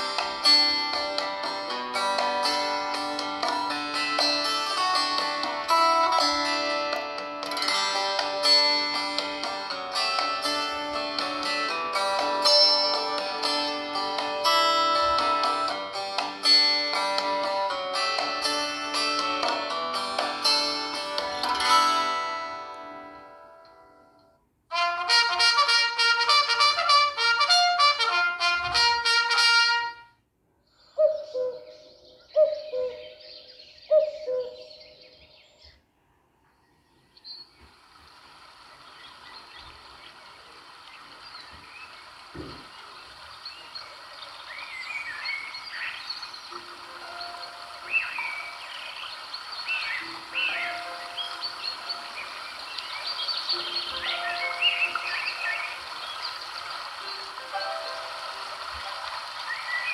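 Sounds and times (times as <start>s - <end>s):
plucked ringtone melody: 0.0s - 23.3s, 46.5s - 49.3s, 49.9s - 59.9s.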